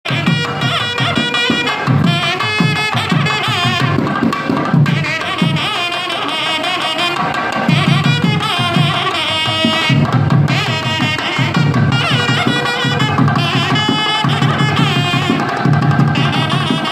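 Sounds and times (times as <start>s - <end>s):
drum strokes: 0.1s - 16.9s
double reed horn melody: 4.9s - 15.6s.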